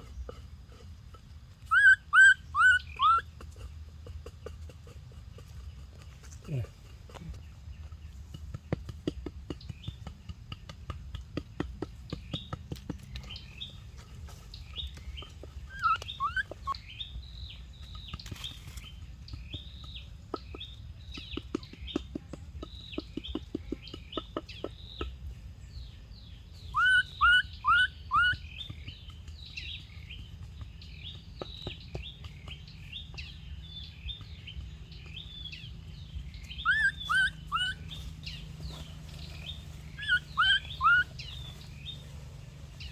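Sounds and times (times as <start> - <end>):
birds chirping: 0.0 - 42.9.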